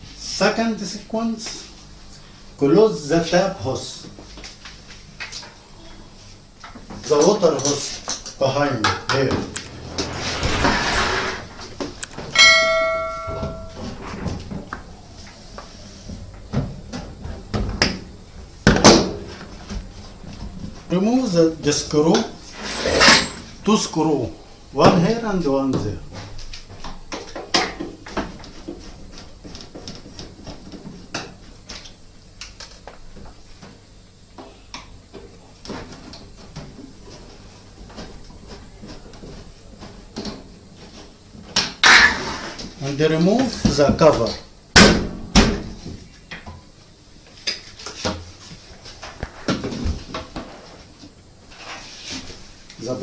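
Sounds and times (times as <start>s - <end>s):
sharp metallic clang: 9.3s - 14.1s.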